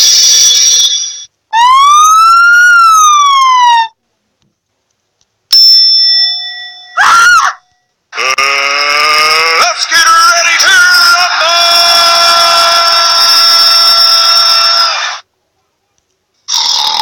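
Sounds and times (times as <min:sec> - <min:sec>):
ringing tone: 0:00.0 - 0:01.3, 0:05.5 - 0:07.0
siren-like wail: 0:01.6 - 0:04.0.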